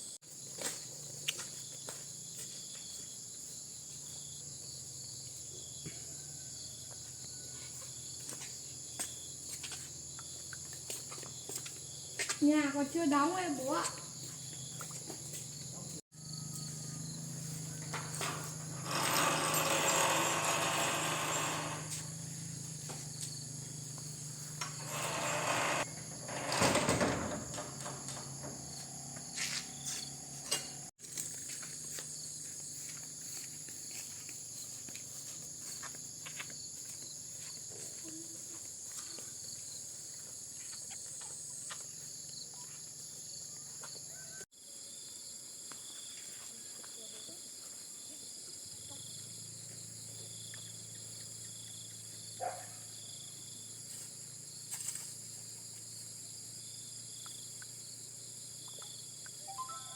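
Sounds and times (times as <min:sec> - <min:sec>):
insects chirring: 0:00.3 - 0:59.9.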